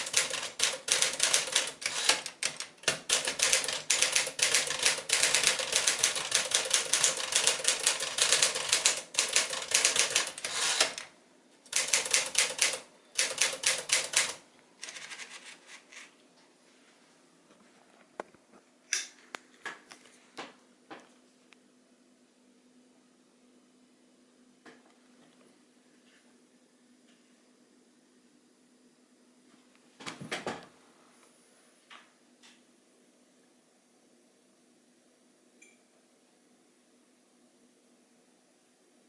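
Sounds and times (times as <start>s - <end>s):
manual typewriter keystrokes: 0.0s - 11.1s, 11.7s - 14.4s.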